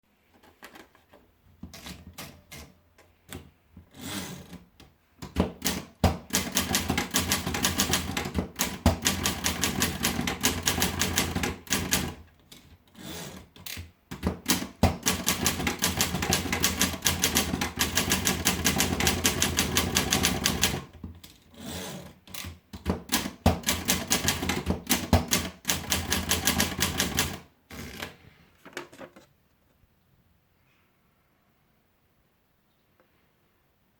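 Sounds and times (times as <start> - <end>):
typewriter key strikes: 13.7 - 20.9, 22.3 - 27.4.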